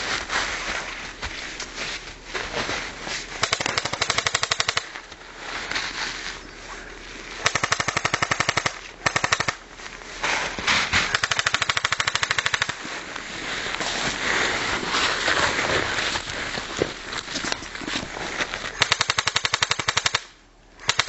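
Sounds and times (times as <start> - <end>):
airsoft guns firing full-auto: 3.4 - 4.9, 7.4 - 9.6, 11.1 - 12.8, 18.8 - 21.0.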